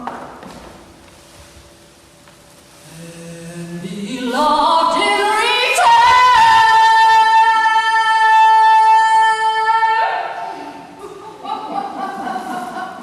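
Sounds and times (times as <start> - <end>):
woman singing: 2.9 - 11.6.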